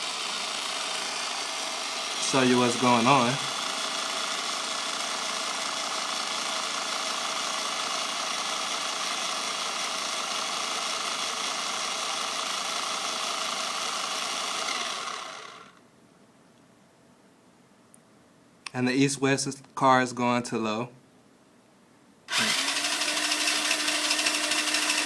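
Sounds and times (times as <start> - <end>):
toy car motors whining: 0.0 - 15.8, 22.3 - 25.0.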